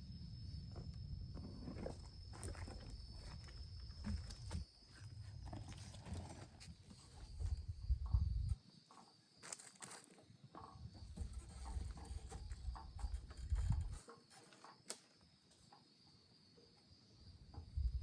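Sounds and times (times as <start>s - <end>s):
high insect trill: 0.0s - 18.0s.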